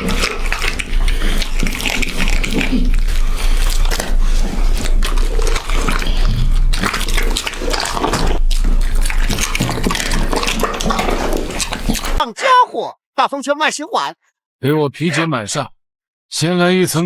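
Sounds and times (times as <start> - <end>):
dog biting and chewing: 0.0 - 12.2.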